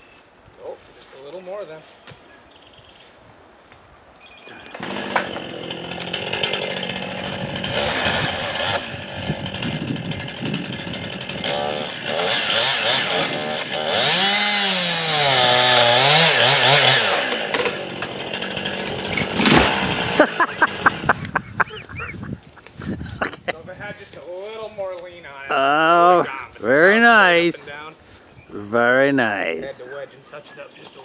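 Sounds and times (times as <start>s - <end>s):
chainsaw cutting through tree: 4.7s - 22.2s.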